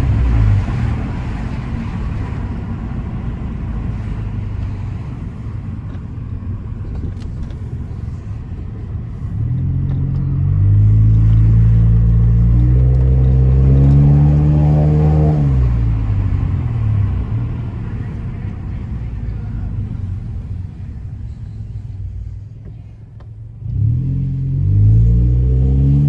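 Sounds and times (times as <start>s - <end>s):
car engine accelerating hard: 0.0s - 22.8s, 23.5s - 26.0s.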